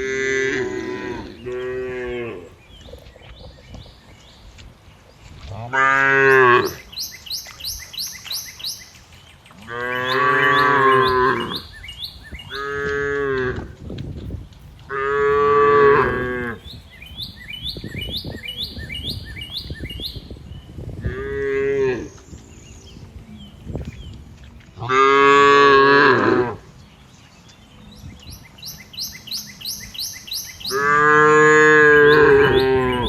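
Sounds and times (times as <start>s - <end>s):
cattle mooing: 0.0s - 2.5s, 24.8s - 26.6s, 30.7s - 33.0s.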